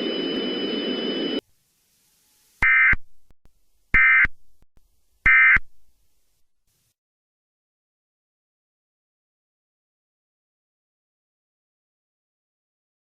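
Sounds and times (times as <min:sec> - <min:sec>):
steady hiss with high whine: 0:00.0 - 0:03.0.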